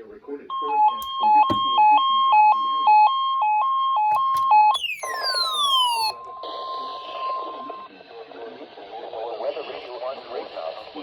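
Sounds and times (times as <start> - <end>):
two-pitch electronic alert beeps: 4.2 - 7.9
falling electronic sweep: 4.8 - 6.1
steady single-pitch tone: 4.8 - 7.8
radio hiss: 5.9 - 11.0.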